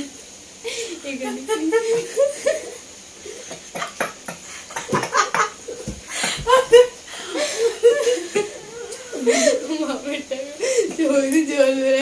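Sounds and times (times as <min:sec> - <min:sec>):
breathy bursts of air: 0:00.3 - 0:01.2, 0:01.8 - 0:09.7
person giggling: 0:01.7 - 0:09.8.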